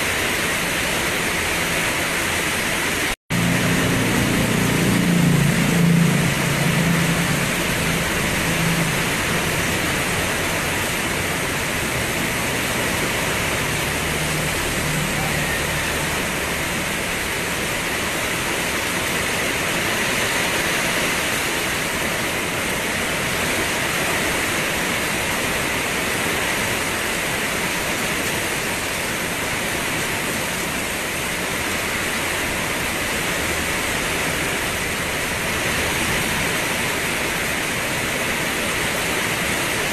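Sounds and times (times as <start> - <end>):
heavy rain falling: 0.0 - 39.9
low hum: 3.3 - 17.9.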